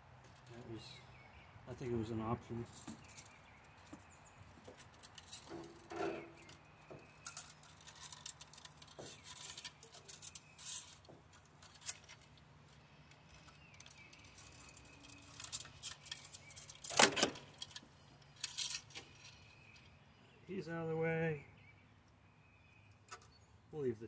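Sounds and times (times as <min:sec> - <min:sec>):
metallic clicks and scrapes: 0:04.6 - 0:19.9.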